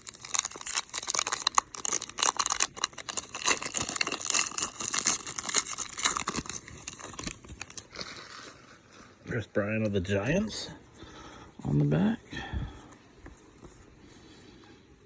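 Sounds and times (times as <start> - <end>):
wrapper tearing and crinkling: 0.0 - 8.7.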